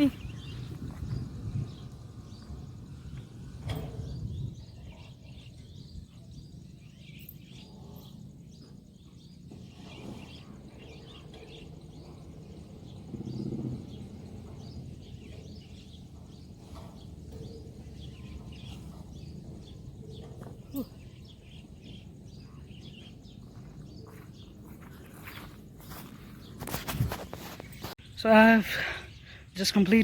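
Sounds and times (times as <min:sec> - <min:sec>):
wind rumbling on microphone: 0:00.0 - 0:06.9, 0:09.3 - 0:28.0.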